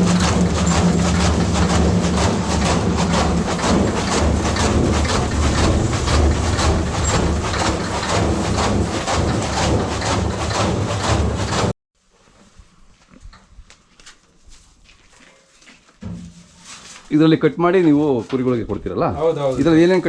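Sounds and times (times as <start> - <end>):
blade cutting fodder: 0.0 - 11.7
chaff cutter motor hum: 0.0 - 11.7.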